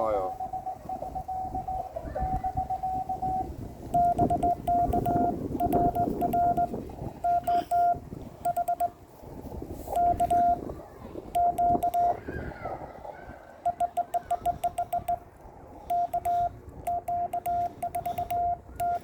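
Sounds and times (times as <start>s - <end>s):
morse code tone: 0.2s - 9.0s, 9.9s - 10.6s, 11.4s - 12.2s, 13.6s - 15.3s, 15.9s - 19.0s
sharp keying clicks: 4.0s - 8.9s, 9.9s - 10.6s, 11.4s - 12.2s, 13.7s - 15.3s, 15.9s - 19.0s.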